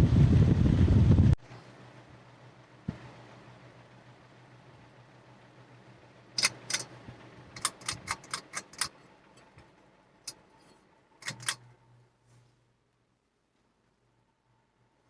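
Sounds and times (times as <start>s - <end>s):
ceiling fan motor humming: 0.0s - 15.0s
metallic clicks and rattles: 6.4s - 9.6s, 10.3s - 11.7s.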